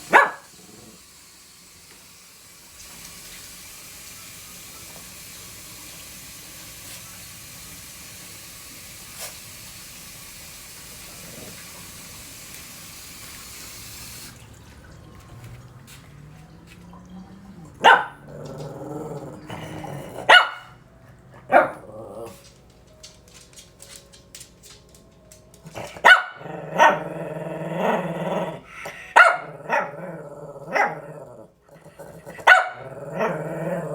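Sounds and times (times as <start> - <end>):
dog barking loudly: 0.0 - 0.5, 17.8 - 18.6, 20.2 - 20.8, 21.4 - 21.9, 25.8 - 27.2, 29.0 - 30.0, 30.7 - 31.2, 32.4 - 33.4
tap water running: 0.0 - 33.9.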